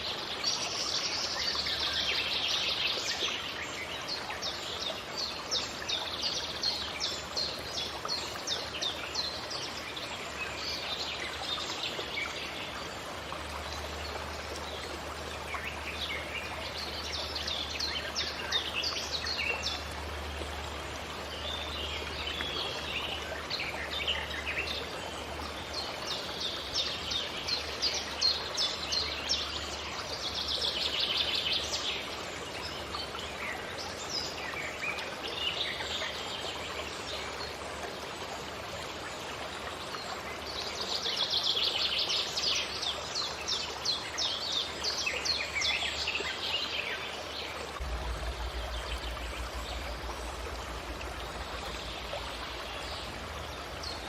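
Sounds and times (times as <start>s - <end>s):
steady hiss: 47.8s - 54.0s.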